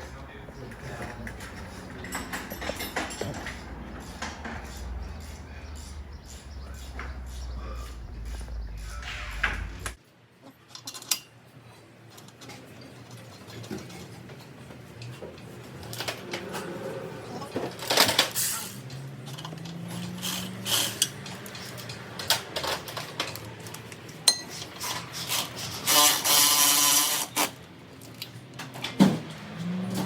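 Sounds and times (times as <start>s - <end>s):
metal tools and parts clinking: 0.0s - 10.0s.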